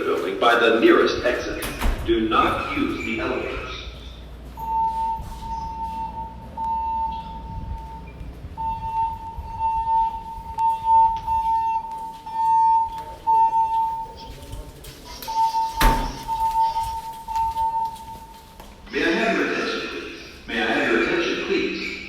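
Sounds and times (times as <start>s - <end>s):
high steady fire alarm tone: 1.3s - 18.8s.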